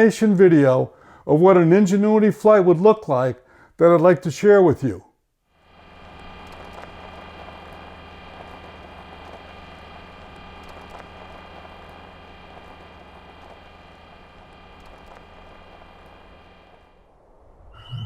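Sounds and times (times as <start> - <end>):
constant hiss: 0.0 - 17.7
steady hum of held tones: 5.5 - 18.0.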